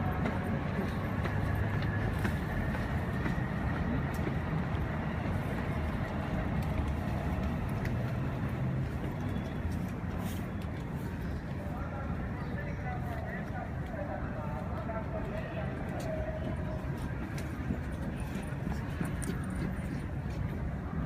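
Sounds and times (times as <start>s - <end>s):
road traffic rumble: 0.0s - 21.0s.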